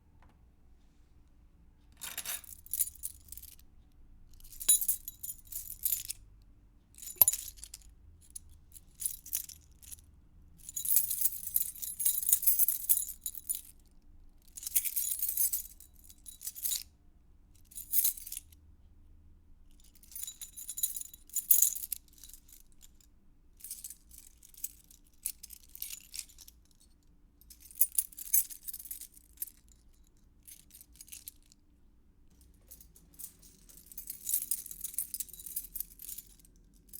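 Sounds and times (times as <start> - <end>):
metal keys jangling: 2.0 - 3.6, 4.4 - 6.1, 7.0 - 7.8, 10.8 - 13.7, 32.7 - 36.6.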